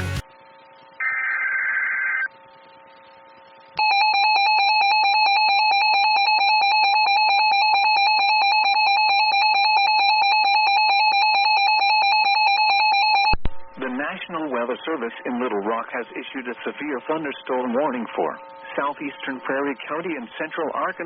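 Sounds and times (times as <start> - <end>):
steady warning alarm tone: 3.7 - 21.0.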